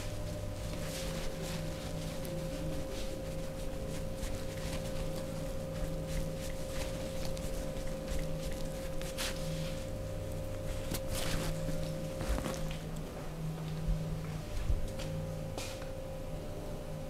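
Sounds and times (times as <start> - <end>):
hands rubbing over clothing: 0.0 - 10.0, 10.6 - 13.0
faint steady hum: 0.0 - 17.0.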